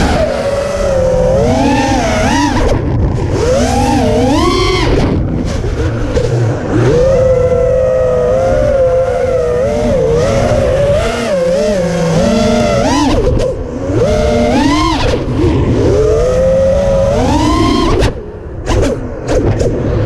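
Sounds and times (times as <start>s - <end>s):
quadcopter motors whining: 0.0s - 18.8s.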